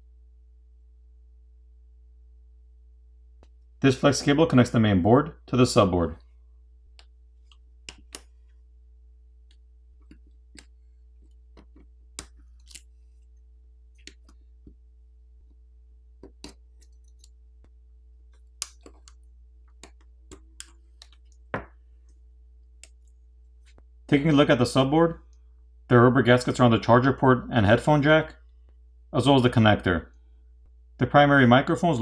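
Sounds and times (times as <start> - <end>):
small clicks and taps of tools: 6.9 - 8.3, 9.5 - 12.9, 14.0 - 14.8, 16.2 - 17.4, 18.3 - 21.8, 22.8 - 23.8.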